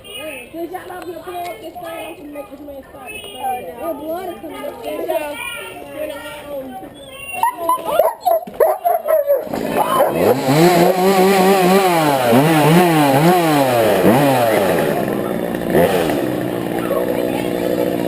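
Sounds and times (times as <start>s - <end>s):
chainsaw revving: 9.4s - 18.0s.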